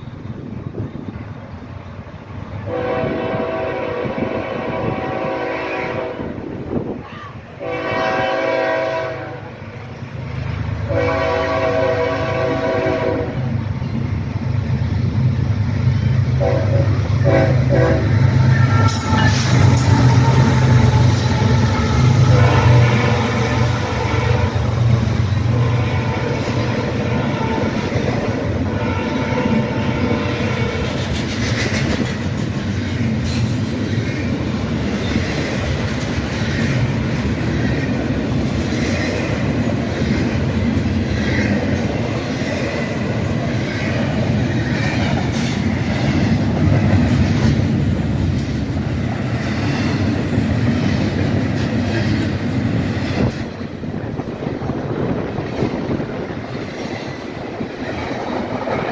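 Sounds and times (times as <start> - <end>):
freight train rumbling past: 0.0 - 58.9
train wheel squeal: 9.4 - 11.9, 12.8 - 22.3
wheels clicking over rail joints: 26.4 - 58.9.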